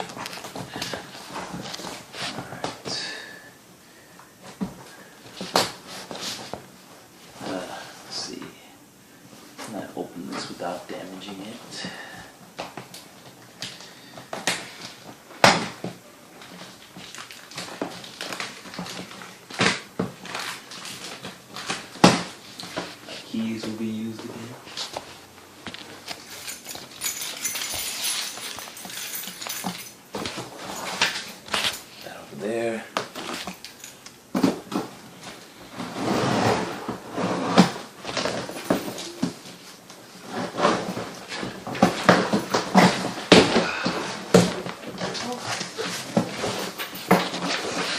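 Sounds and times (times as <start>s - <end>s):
cardboard box scraping and rustling: 35.7s - 38.0s.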